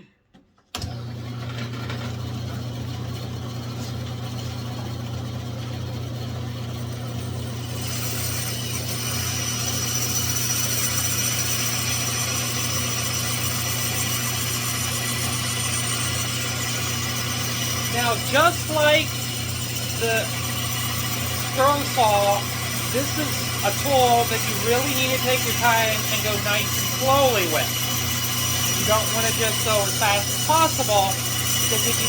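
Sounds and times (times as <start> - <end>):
bandsaw motor hum: 0.8 - 32.0
saw blade cutting wood hiss: 19.9 - 32.0.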